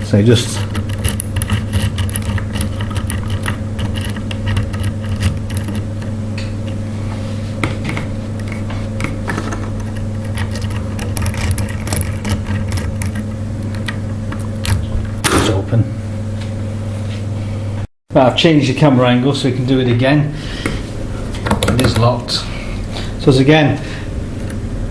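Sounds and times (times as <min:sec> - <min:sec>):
steady low hum: 0:00.0 - 0:24.9
lock pick clicks and scrapes: 0:00.6 - 0:05.9, 0:10.2 - 0:13.2.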